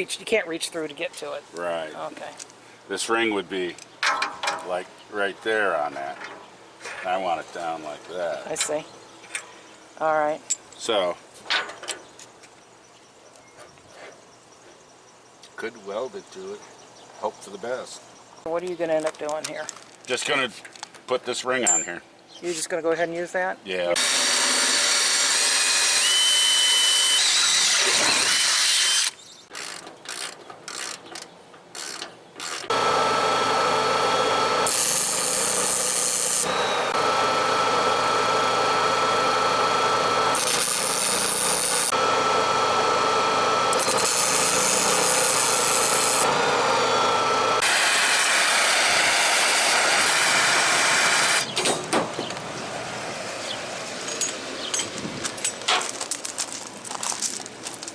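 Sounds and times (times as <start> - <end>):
welding arc crackling and hissing: 32.7 - 51.2.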